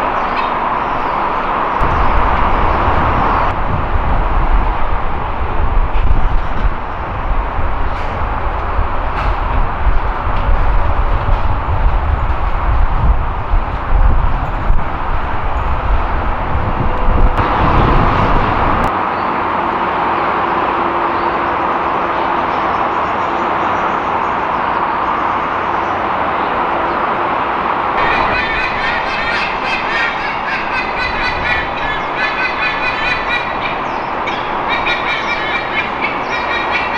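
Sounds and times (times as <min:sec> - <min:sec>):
expressway traffic noise: 0:00.0 - 0:36.9
eagles honking calls: 0:27.9 - 0:36.9.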